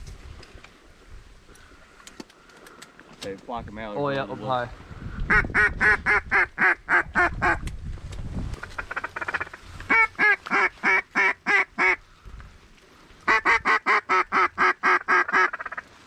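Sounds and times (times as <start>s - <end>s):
duck call quacks: 5.3s - 7.6s, 8.7s - 12.0s, 13.3s - 15.8s.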